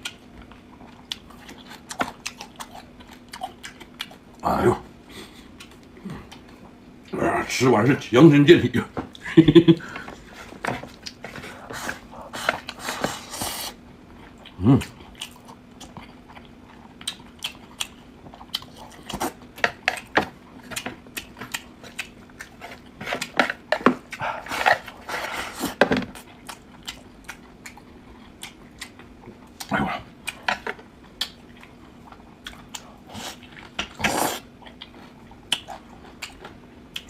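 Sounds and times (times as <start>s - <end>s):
chewing and lip smacking: 0.0s - 4.4s, 14.2s - 25.0s, 26.1s - 37.0s
faint steady hum: 0.0s - 37.0s.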